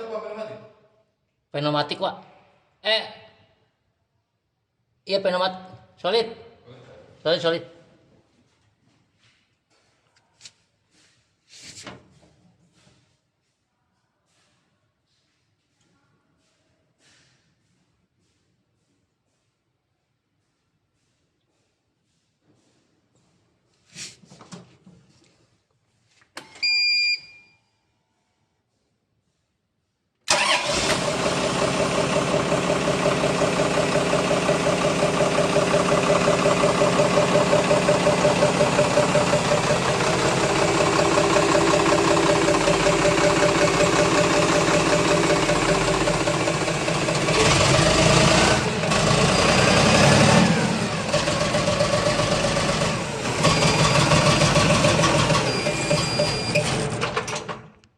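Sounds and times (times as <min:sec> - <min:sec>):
short electronic beep: 0:26.5 - 0:27.8, 0:55.5 - 0:56.7
diesel engine idling: 0:30.3 - 0:57.2.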